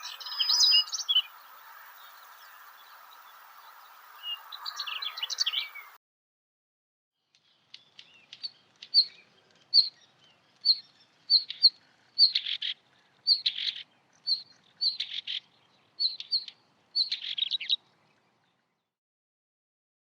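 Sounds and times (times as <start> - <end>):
songbird singing: 0.0 - 6.0, 7.2 - 18.9.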